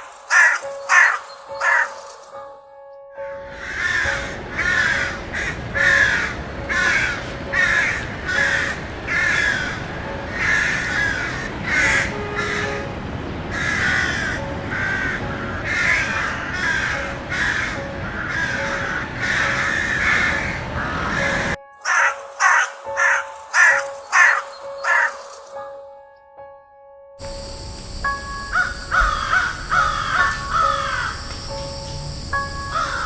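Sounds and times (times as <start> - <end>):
crows cawing: 0.0 - 2.5, 3.4 - 25.8, 27.8 - 31.8, 32.4 - 33.0
steady hiss: 27.2 - 33.0.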